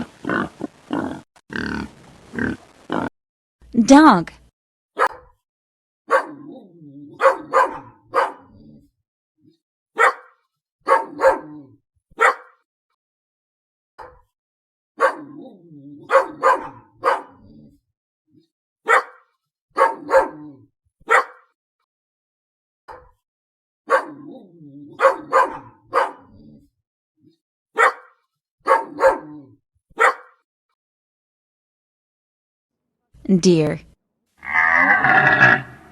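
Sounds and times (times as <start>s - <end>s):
dog barking: 5.0s - 5.4s, 6.1s - 8.6s, 10.0s - 12.6s, 14.0s - 14.3s, 15.0s - 17.5s, 18.8s - 21.5s, 23.9s - 26.5s, 27.8s - 30.4s.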